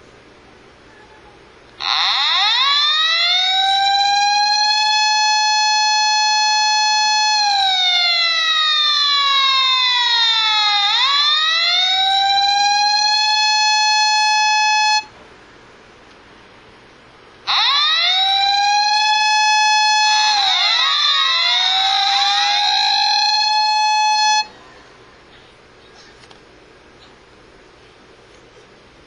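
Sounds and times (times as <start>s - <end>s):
police car siren wailing: 1.8s - 15.1s, 17.5s - 24.5s.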